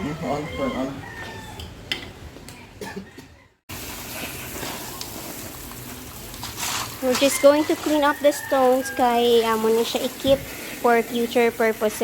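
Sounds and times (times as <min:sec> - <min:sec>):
rain hissing: 0:03.7 - 0:12.0.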